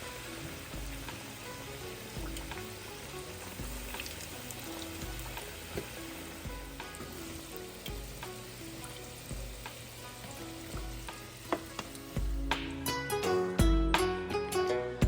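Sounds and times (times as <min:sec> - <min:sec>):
food sizzling in hot oil: 0:00.0 - 0:13.6.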